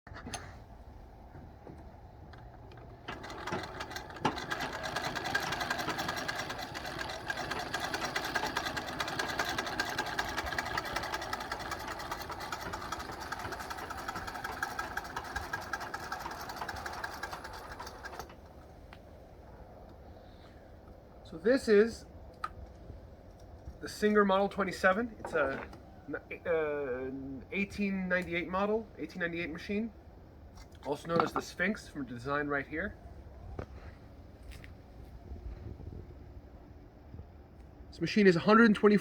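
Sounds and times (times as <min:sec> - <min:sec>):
treadle sewing machine clatter: 0:02.7 - 0:18.5.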